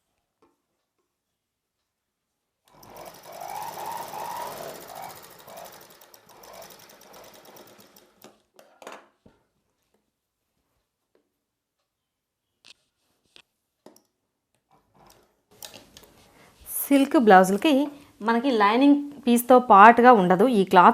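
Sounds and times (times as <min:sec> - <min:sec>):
sewing machine stitching: 0:02.7 - 0:08.5.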